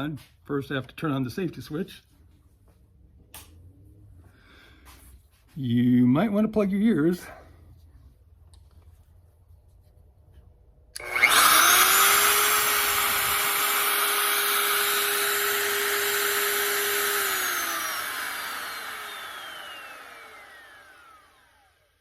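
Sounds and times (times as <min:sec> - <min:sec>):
electric router high whine: 0:11.0 - 0:22.0.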